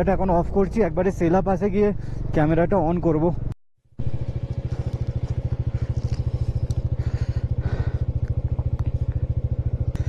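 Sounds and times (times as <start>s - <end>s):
motorcycle engine idling: 4.0s - 10.0s.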